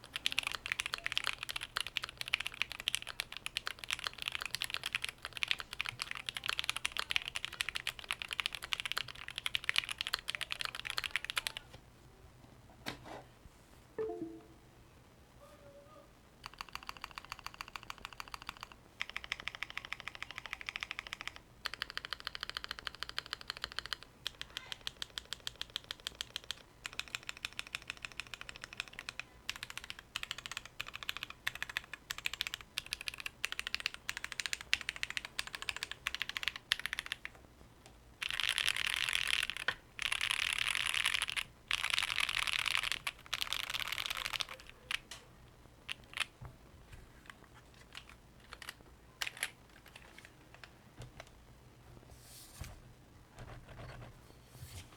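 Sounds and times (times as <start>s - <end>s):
mechanical keyboard typing: 0.0s - 11.6s, 16.4s - 37.4s, 38.2s - 45.2s, 45.9s - 46.4s, 47.8s - 50.7s
fast rolling keystrokes: 0.1s - 11.6s, 24.9s - 37.2s, 38.2s - 45.0s.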